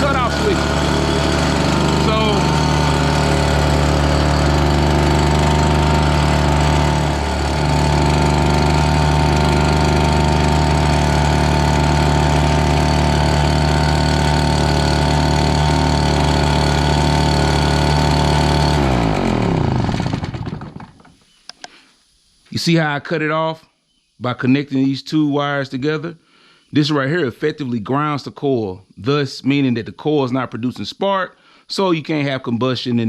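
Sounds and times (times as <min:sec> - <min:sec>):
leaf blower engine running: 0:00.0 - 0:21.1.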